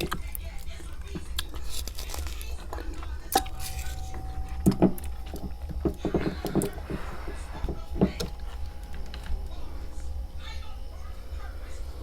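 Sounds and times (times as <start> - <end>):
frost crunching between teeth: 0.0 - 9.6
constant low hum: 0.0 - 12.0
faint steady tone: 3.3 - 12.0.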